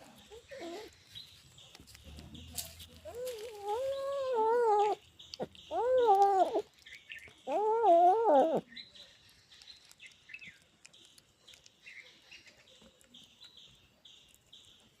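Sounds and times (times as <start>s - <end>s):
faint high chirps and ticks: 4.6s - 7.8s, 8.6s - 15.0s.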